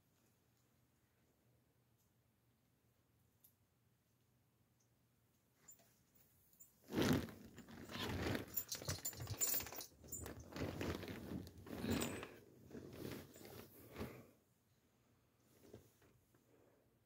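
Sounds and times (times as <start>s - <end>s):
rustling and clinking of objects: 5.6s - 14.3s.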